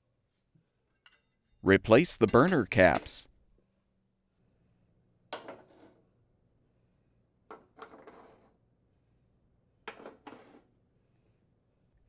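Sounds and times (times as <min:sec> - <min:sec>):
burner caps clinking: 0:01.9 - 0:03.2.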